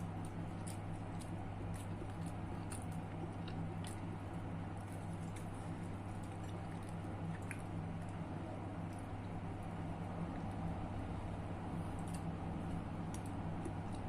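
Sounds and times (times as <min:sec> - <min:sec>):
person chewing food: 0:00.0 - 0:14.0
steady low hum: 0:00.0 - 0:14.0.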